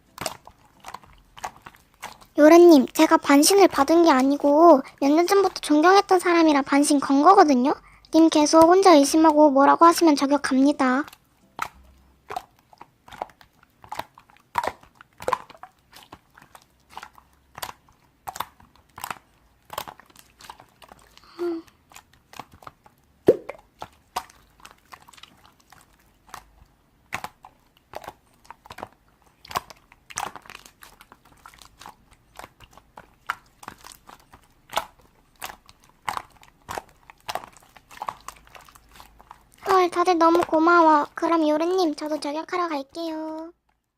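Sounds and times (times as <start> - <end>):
crisp clicks and crunches: 11.0 - 23.0, 23.7 - 42.4.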